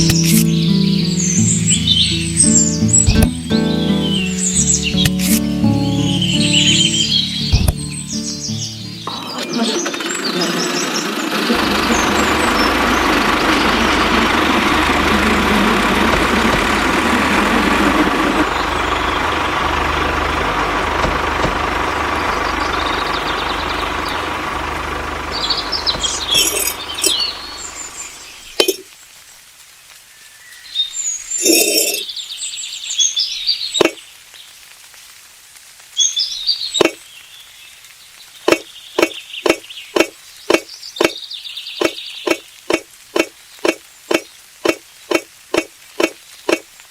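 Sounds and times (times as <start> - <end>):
bird chirps: 0.0 - 11.0, 22.3 - 24.3, 25.3 - 28.9, 30.4 - 34.0, 36.0 - 37.4, 38.4 - 46.7
sharp knocks: 3.1 - 3.4, 7.5 - 7.9.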